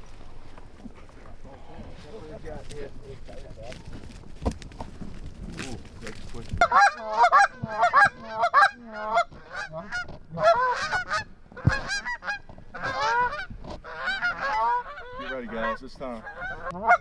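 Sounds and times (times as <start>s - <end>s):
dull low thump: 3.6s - 6.7s, 11.5s - 13.9s
goose honking and clucking: 5.5s - 17.0s.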